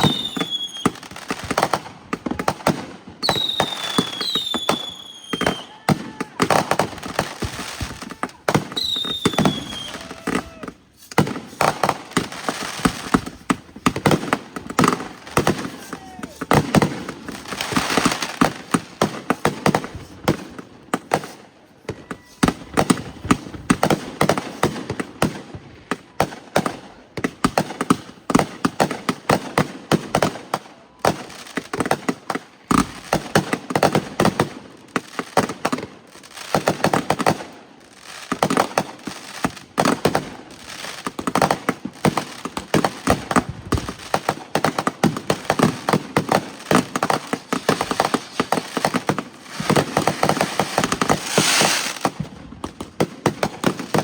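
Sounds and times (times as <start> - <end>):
fireworks bangs and crackles: 0.0 - 54.0.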